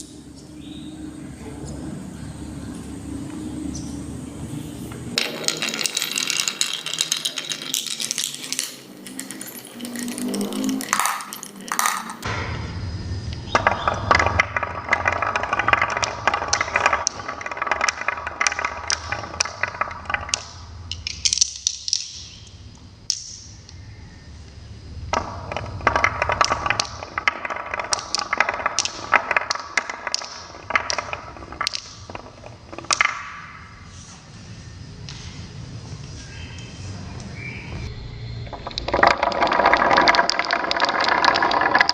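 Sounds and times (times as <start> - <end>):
marbles rattling down a track: 5.2 - 12.3, 13.5 - 22.4, 25.1 - 34.0, 38.5 - 41.9.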